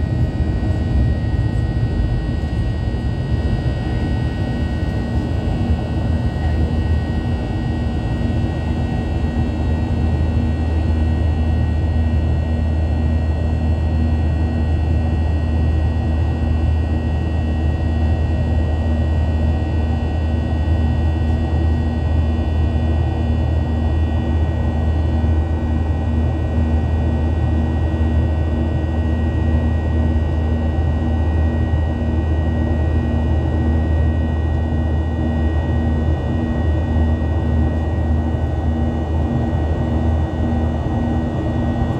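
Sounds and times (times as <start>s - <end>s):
airplane cabin engine rumble: 0.0s - 13.3s, 29.4s - 41.9s
high turbine whine: 31.3s - 41.9s.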